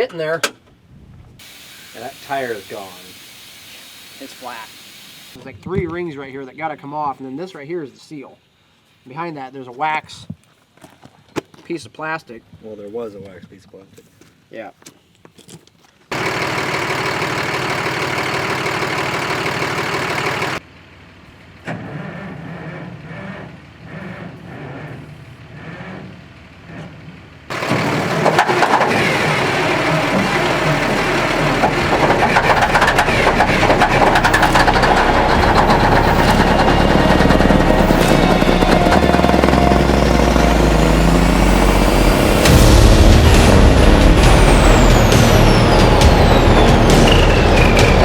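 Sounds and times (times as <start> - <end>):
steady machine noise: 1.4 - 5.4, 16.1 - 20.6, 27.5 - 48.0
engine cranking with rhythmic chugging: 16.1 - 20.6, 21.9 - 48.0
engine running loudly: 16.1 - 20.6, 27.5 - 48.0.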